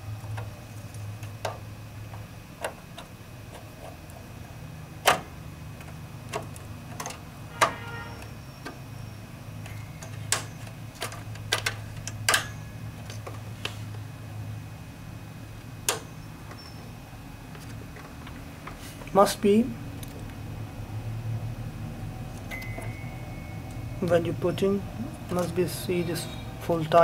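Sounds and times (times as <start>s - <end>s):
steady low hum: 0.0s - 27.0s
memory modules clicking into slots: 9.6s - 13.4s, 15.8s - 16.6s.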